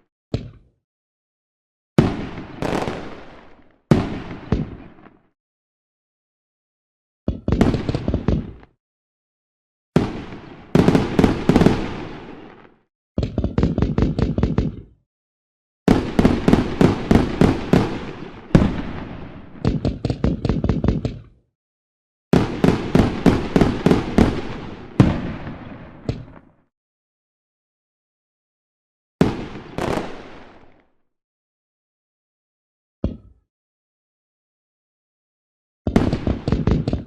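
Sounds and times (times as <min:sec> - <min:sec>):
fireworks bangs and crackles: 0:02.0 - 0:05.3, 0:07.5 - 0:08.7, 0:10.0 - 0:12.8, 0:15.9 - 0:21.1, 0:22.3 - 0:26.6, 0:29.2 - 0:30.9, 0:35.9 - 0:37.0.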